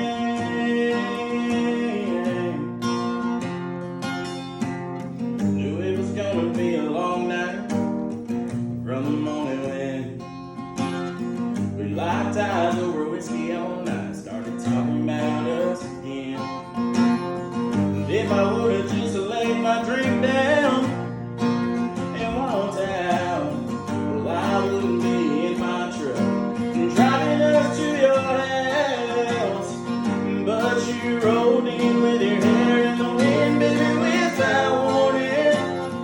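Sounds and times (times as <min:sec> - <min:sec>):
person singing: 0:00.0 - 0:02.8, 0:22.1 - 0:36.0
strummed acoustic guitar: 0:00.0 - 0:36.0.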